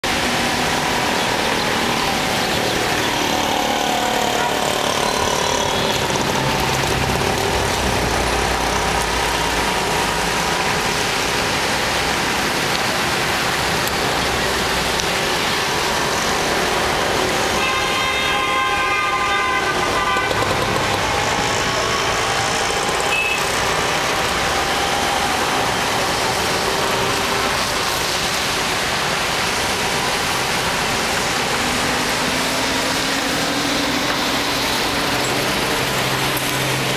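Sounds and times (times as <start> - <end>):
vehicles passing on wet road: 0.0 - 36.9
car horn honking: 17.6 - 21.2, 23.1 - 23.5.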